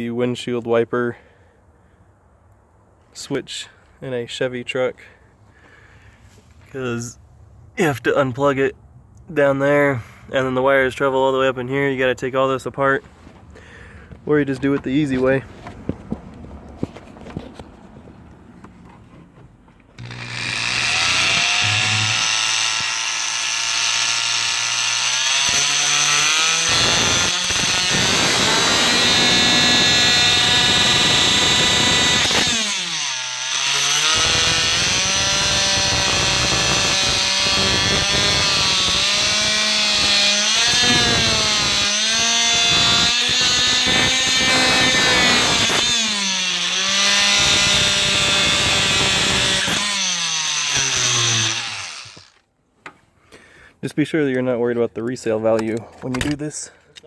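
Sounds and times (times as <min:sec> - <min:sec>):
power tool grinding through plastic: 0:20.0 - 0:52.4.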